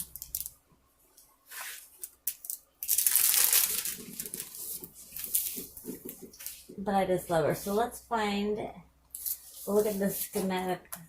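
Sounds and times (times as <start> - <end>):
plastic film crinkling: 0.0 - 0.6, 1.5 - 6.7.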